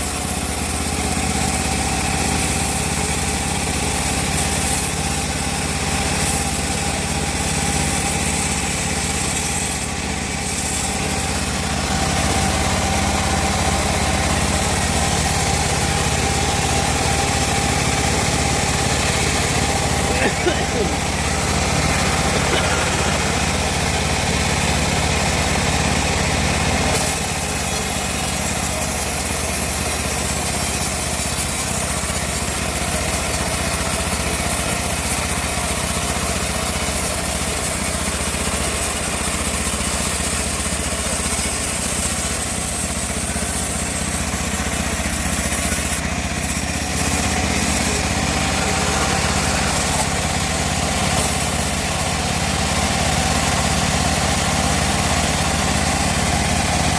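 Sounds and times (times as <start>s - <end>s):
saw blade cutting hiss: 0.0s - 12.6s, 13.4s - 25.1s, 36.1s - 54.1s
bandsaw droning: 2.7s - 28.7s, 43.2s - 56.9s.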